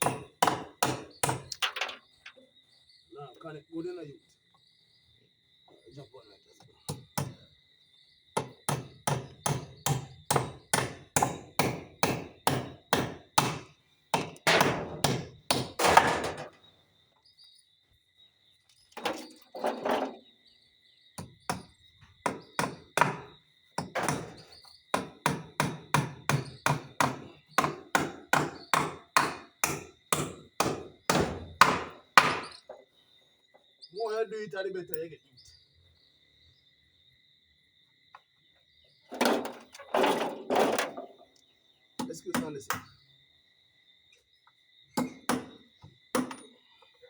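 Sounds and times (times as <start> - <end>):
hammer driving nails into wood: 0.0 - 1.9, 8.4 - 16.5, 21.2 - 32.6, 45.0 - 46.5.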